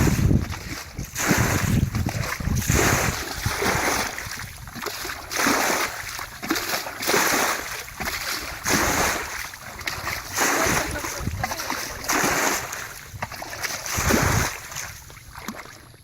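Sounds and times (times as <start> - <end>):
water splashing and sloshing: 0.0 - 16.0.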